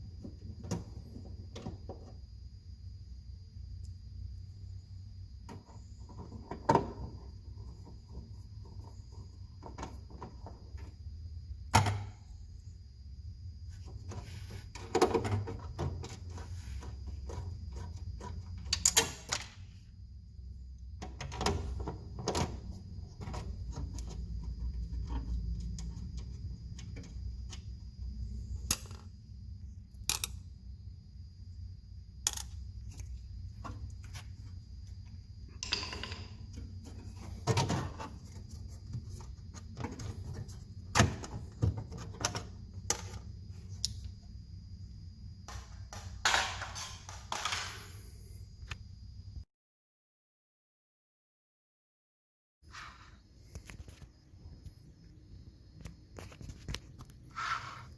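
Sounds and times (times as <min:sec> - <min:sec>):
sharp clicks and knocks: 0:35.5 - 0:39.0.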